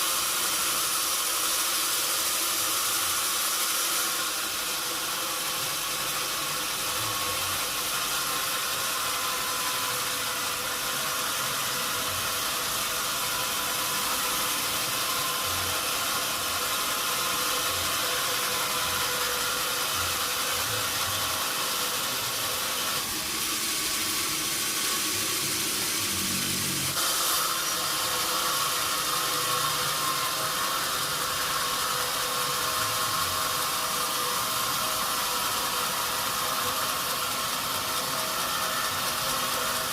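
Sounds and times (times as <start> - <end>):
machine hum: 0.0 - 39.9
sawmill machinery hiss: 0.0 - 39.9.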